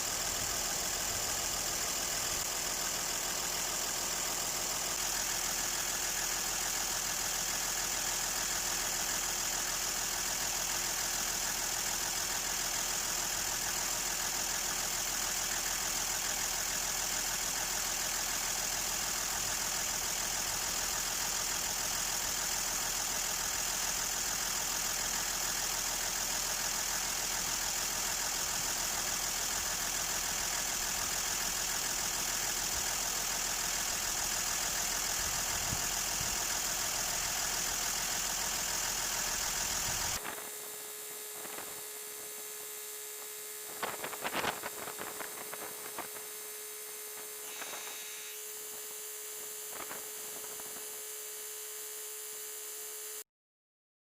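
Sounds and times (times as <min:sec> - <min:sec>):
engine idling: 0:00.0 - 0:40.5
high-pitched hiss: 0:47.1 - 0:51.0.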